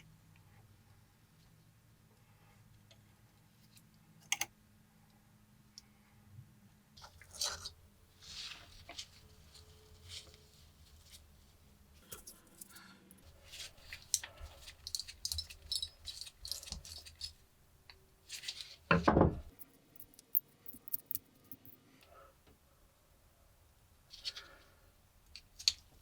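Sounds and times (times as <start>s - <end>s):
metal lighter parts clinking: 14.8s - 17.4s.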